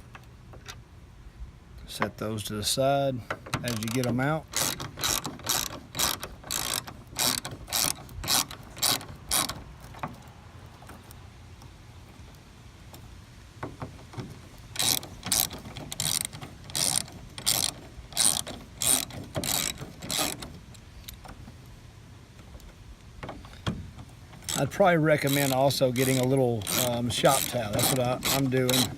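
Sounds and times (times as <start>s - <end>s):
ratchet clicking: 3.3s - 10.2s, 14.2s - 21.4s, 24.4s - 28.9s.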